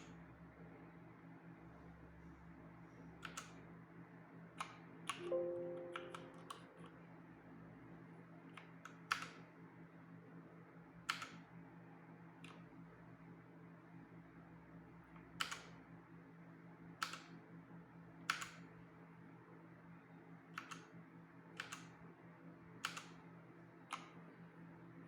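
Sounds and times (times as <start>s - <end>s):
short low tone: 5.2s - 6.9s.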